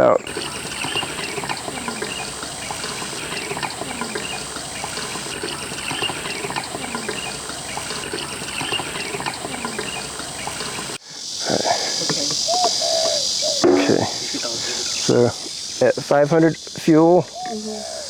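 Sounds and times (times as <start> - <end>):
liquid trickling and splashing: 0.3 - 11.0.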